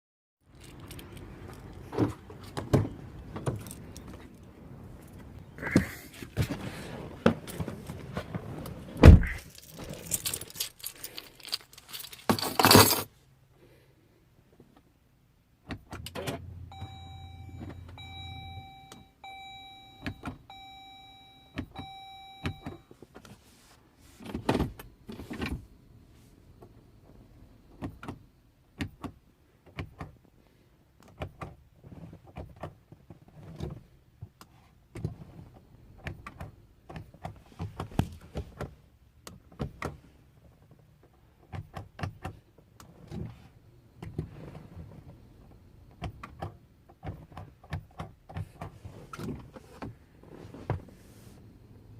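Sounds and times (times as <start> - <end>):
keys jangling: 9.3 - 13.1
dashboard warning chime: 16.2 - 23.0.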